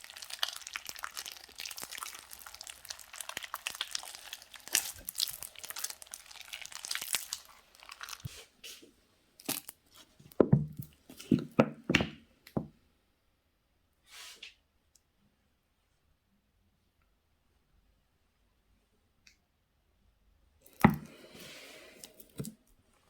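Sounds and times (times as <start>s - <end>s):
slime crackling and squishing: 0.0s - 8.5s, 9.4s - 9.9s.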